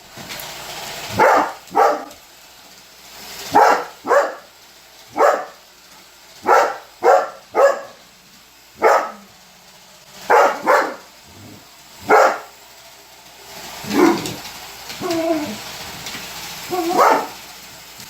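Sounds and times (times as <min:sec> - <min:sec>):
dog barking: 0:01.1 - 0:02.2, 0:03.5 - 0:04.5, 0:05.1 - 0:05.6, 0:06.4 - 0:08.0, 0:08.8 - 0:09.3, 0:10.3 - 0:11.1, 0:12.0 - 0:12.5, 0:13.9 - 0:14.4, 0:16.7 - 0:17.4.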